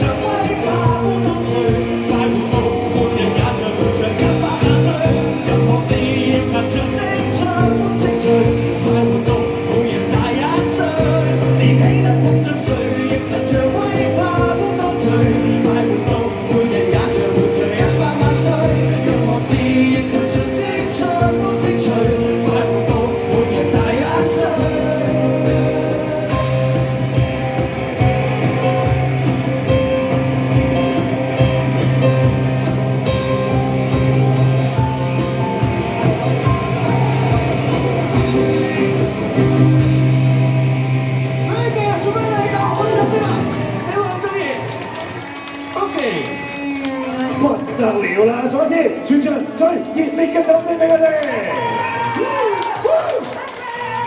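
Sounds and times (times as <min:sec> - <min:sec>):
person singing: 0:00.0 - 0:29.1, 0:31.4 - 0:40.5
bass guitar: 0:00.0 - 0:47.7
electric guitar: 0:00.0 - 0:48.2.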